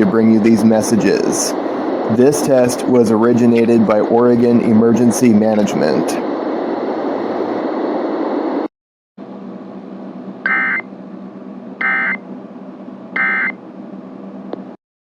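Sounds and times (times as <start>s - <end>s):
radio-like hiss: 0.0s - 8.7s
low hum: 0.0s - 14.7s.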